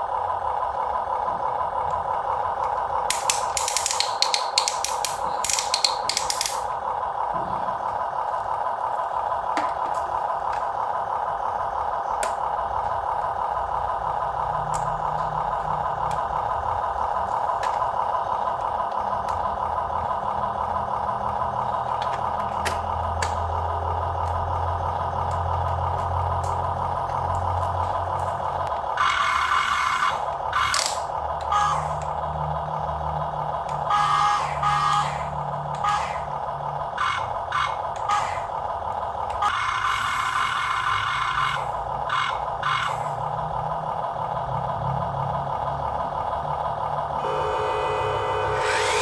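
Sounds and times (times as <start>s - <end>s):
sharp clicks: 3.1s - 6.8s
rattling: 3.1s - 10.8s
small electric motor whining: 27.3s - 32.1s, 47.2s - 49.0s
low hum: 47.2s - 49.0s.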